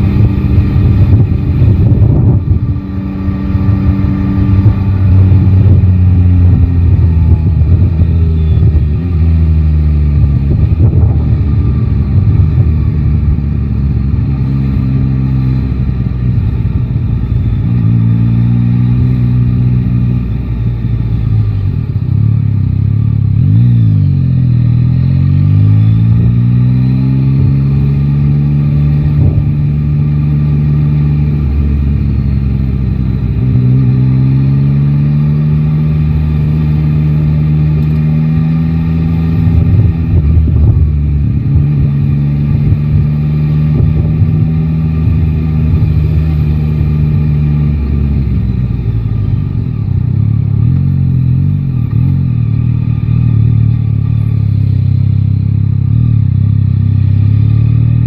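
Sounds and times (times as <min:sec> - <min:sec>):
wind rumbling on microphone: 0:00.0 - 0:20.1, 0:27.3 - 0:34.2, 0:37.8 - 0:49.9
motorcycle engine under way: 0:00.0 - 0:58.0.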